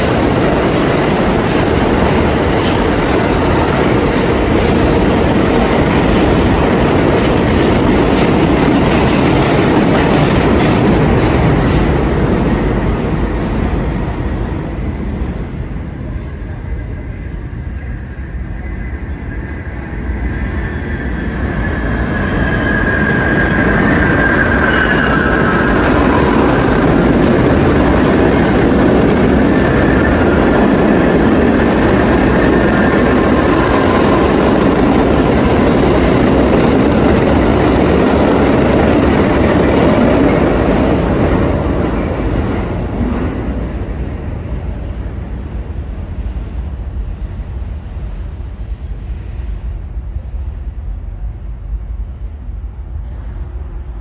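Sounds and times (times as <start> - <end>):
subway train wheels rumbling: 0.0 - 54.0
wheels squealing: 18.7 - 36.5.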